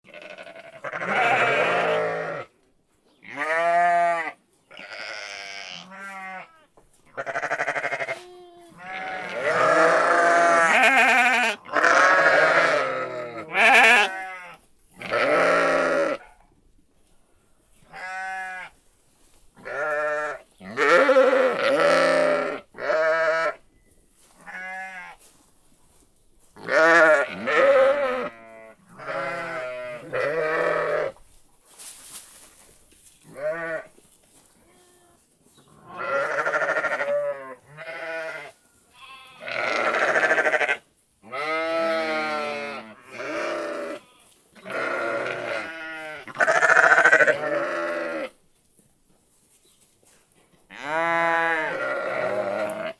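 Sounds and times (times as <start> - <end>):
sheep bleating: 0.0 - 2.5, 3.2 - 16.3, 17.9 - 18.7, 19.6 - 23.6, 24.4 - 25.2, 26.6 - 31.2, 33.3 - 33.9, 35.8 - 48.4, 50.7 - 52.9.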